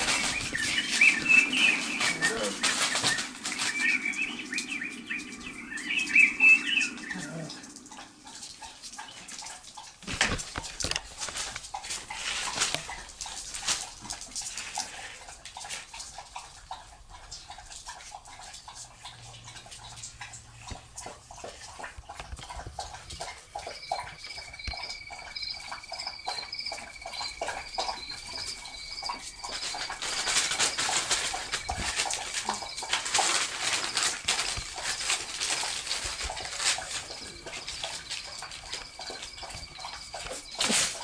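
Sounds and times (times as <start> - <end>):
puppy vocal sounds: 0.0 - 5.2, 6.2 - 41.0
regular chirps: 0.0 - 9.5, 21.4 - 41.0
paws scrabbling and scratching: 0.0 - 41.0.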